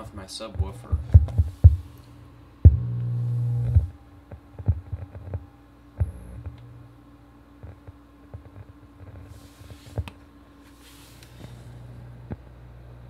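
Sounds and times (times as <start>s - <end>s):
faint steady hum: 0.0s - 13.0s
subwoofer popping and thumping: 0.5s - 1.9s, 2.6s - 5.4s
loud buzzing hum: 0.5s - 7.3s.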